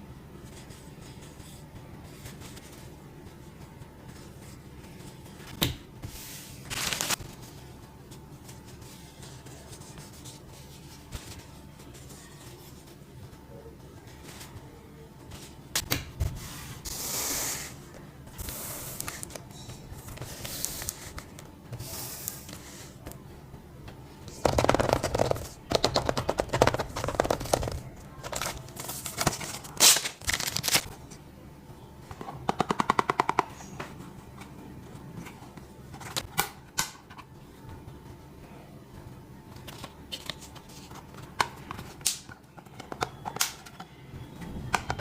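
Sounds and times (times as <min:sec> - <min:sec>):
packaging rustling: 0:24.4 - 0:30.9.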